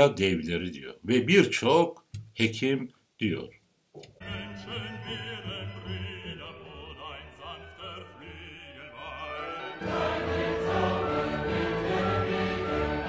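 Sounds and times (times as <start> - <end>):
music with choir singing: 4.2 - 13.0.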